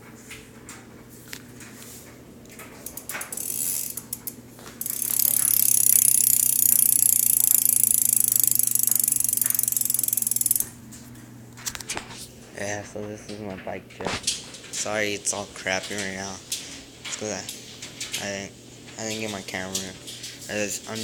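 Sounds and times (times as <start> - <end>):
bike freewheel ratchet clicking: 2.8 - 10.8.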